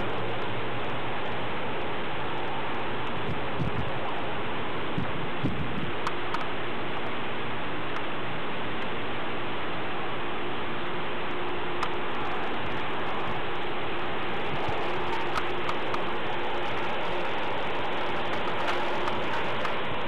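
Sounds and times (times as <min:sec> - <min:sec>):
rushing storm noise: 0:00.0 - 0:06.8, 0:11.4 - 0:20.0
faint ticks: 0:11.3 - 0:20.0.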